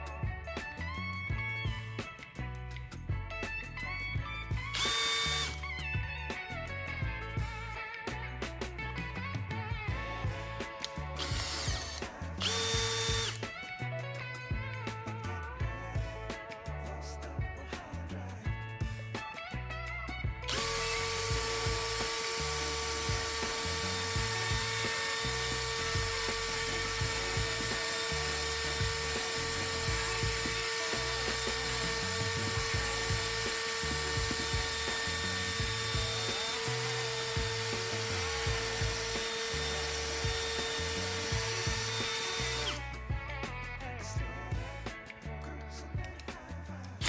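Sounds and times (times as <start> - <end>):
background music: 0.0 - 47.0
power tool motor whining: 4.6 - 5.8, 10.6 - 13.6, 20.4 - 42.9.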